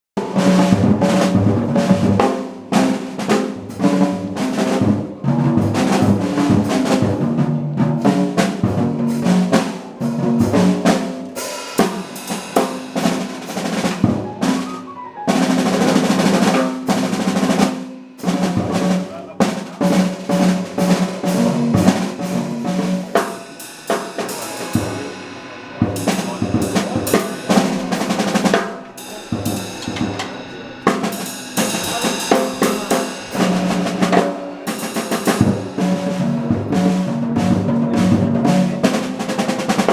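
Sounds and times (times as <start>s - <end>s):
drum kit rolls and fills: 0.2s - 39.9s
ringing cymbal: 11.4s - 14.9s, 23.1s - 35.9s.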